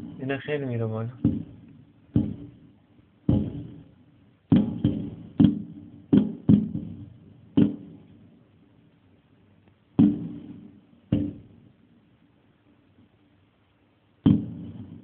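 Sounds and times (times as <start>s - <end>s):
firework shells booming: 0.0s - 8.3s, 10.0s - 11.8s, 14.2s - 15.0s.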